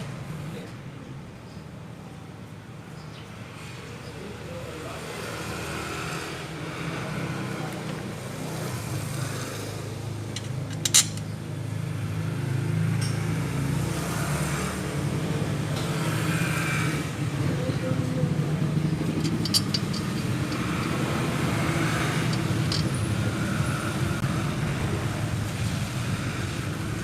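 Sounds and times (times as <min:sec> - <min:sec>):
vehicle engine running: 0:16.2 - 0:27.0
sharp metallic clink: 0:19.1 - 0:21.1.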